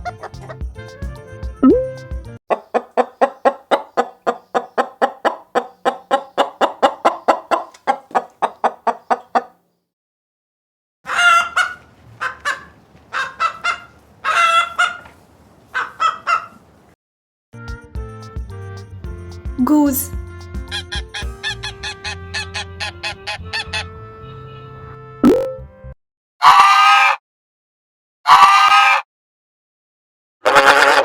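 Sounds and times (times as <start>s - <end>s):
chicken squawking: 2.5s - 9.5s, 11.1s - 15.1s, 15.7s - 16.6s, 26.4s - 27.2s, 28.3s - 29.0s, 30.4s - 31.0s
chicken clucking: 2.5s - 9.6s, 11.1s - 16.6s.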